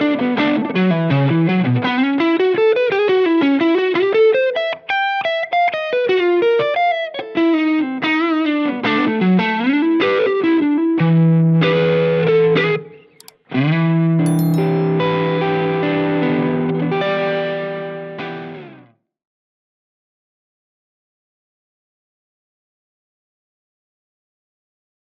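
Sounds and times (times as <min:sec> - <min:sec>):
overdriven electric guitar: 0:14.4 - 0:18.9.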